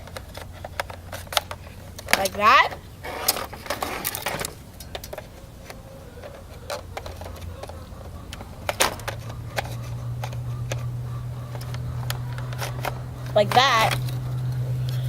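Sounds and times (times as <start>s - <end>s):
steady low hum: 0.0s - 15.0s
plastic clicks and taps: 4.4s - 15.0s.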